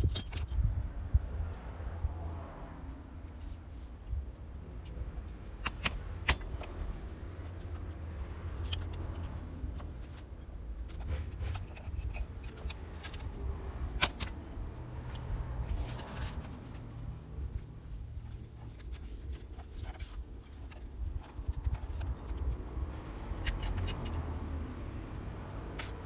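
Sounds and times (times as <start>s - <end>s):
low steady rumble: 0.0s - 26.0s
metallic clinks of tools: 11.4s - 14.4s.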